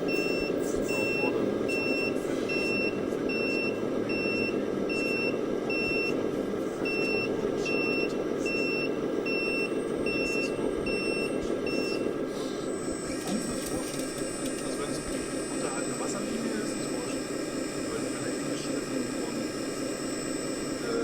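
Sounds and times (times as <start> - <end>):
reversing beeper: 6.9 - 21.0.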